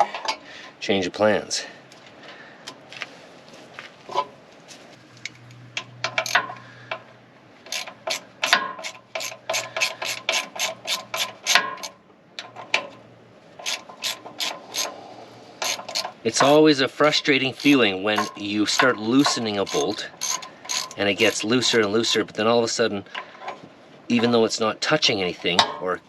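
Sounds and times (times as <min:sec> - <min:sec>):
ratchet wrench clicking: 0:06.0 - 0:06.6, 0:07.7 - 0:11.9, 0:13.6 - 0:14.9, 0:15.6 - 0:16.2, 0:17.5 - 0:22.2.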